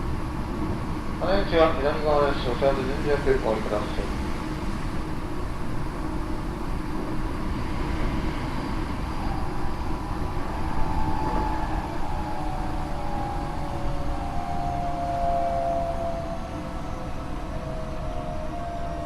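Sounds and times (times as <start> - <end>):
wheels rumbling on rail: 0.0 - 19.0
train motor whine: 7.5 - 19.0.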